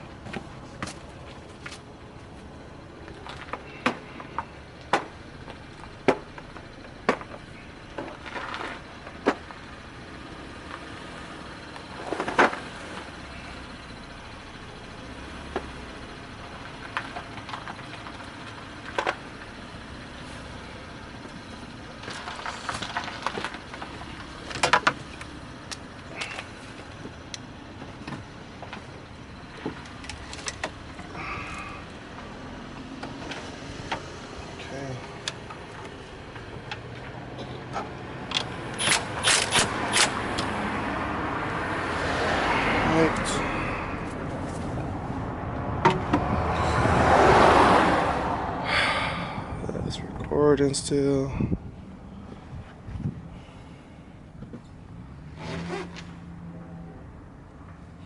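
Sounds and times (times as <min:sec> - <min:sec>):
metallic clicks of hand tools: 0:38.3 - 0:40.5.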